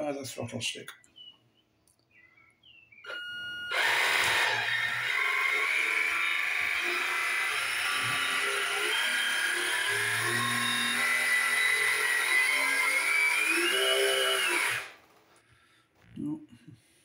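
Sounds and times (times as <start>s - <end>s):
electric motor whine: 3.1s - 15.0s.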